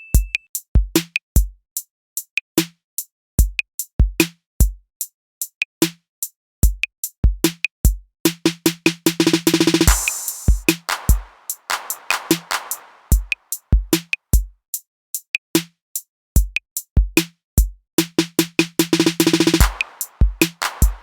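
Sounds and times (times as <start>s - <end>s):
drum machine kick and snare: 0.0s - 1.6s, 3.4s - 4.8s, 5.8s - 6.0s, 6.6s - 14.5s, 15.6s - 15.8s, 16.4s - 21.0s.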